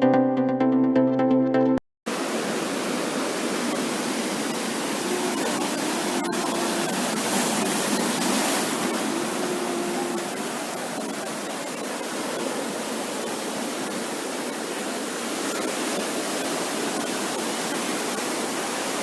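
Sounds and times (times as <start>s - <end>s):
electronic intro music: 0.0s - 1.8s
ocean surf breaking: 2.1s - 19.0s.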